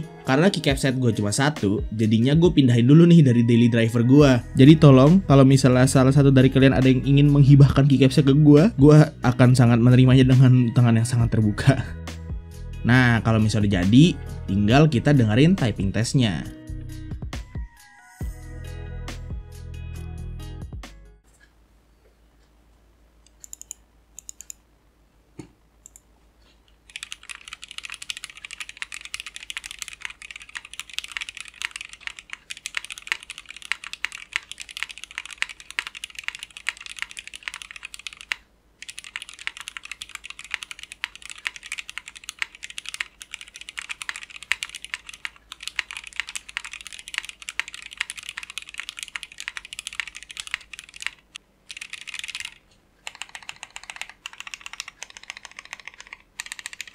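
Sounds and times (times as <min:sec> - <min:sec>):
fast typing on mechanical keyboard: 0:26.9 - 0:56.9.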